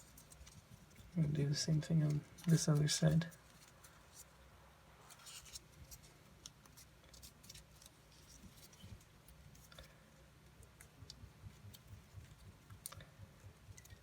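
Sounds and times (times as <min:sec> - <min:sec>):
soft paper crinkles: 0:00.0 - 0:14.0
paper folding and creasing: 0:01.9 - 0:04.4, 0:05.0 - 0:10.0.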